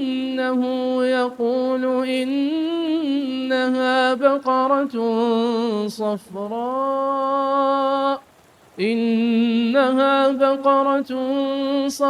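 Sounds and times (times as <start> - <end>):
man chanting: 0.0 - 8.2, 8.8 - 12.0.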